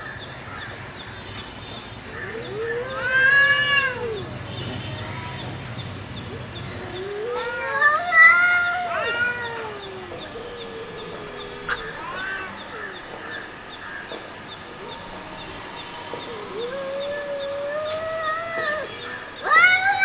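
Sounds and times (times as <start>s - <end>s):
cats yowling in a fight: 2.2s - 5.3s, 6.8s - 12.6s, 16.4s - 20.0s.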